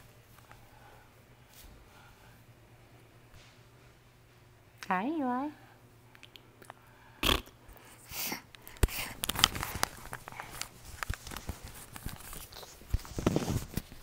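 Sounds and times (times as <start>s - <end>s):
crinkling and rustling: 8.9s - 14.0s.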